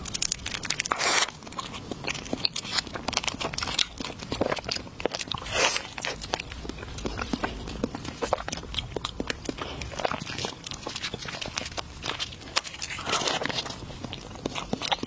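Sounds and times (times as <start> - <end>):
crunchy eating: 0.0 - 15.0.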